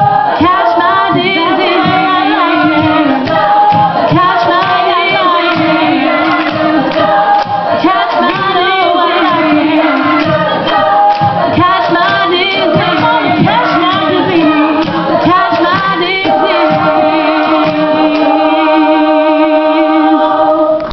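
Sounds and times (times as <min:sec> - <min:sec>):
steady beat: 0:00.0 - 0:20.2
vocal group singing harmonies: 0:00.0 - 0:20.9.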